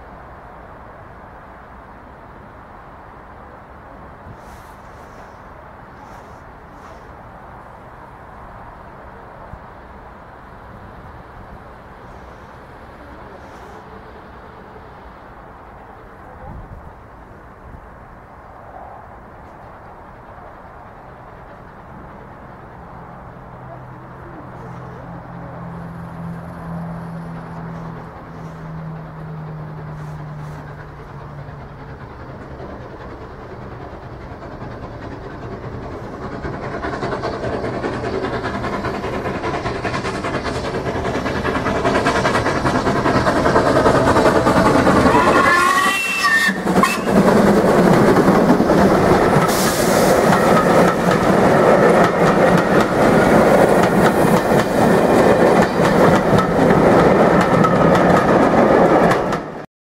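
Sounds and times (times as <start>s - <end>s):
train rushing past: 0.0s - 59.7s
wheels clattering on rail joints: 24.0s - 59.6s.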